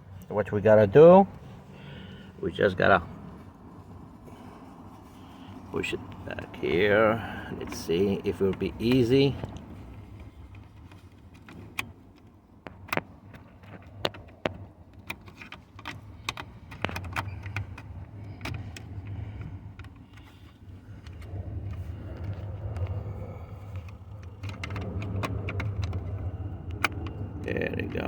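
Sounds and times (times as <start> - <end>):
low hum: 17.5 - 28.0.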